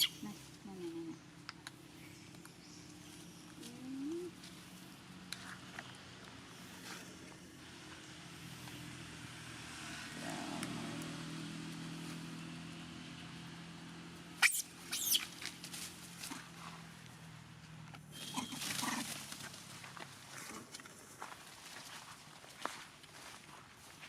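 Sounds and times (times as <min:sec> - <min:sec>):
monkeys calling: 0:00.0 - 0:00.5, 0:14.4 - 0:15.3, 0:18.2 - 0:19.2.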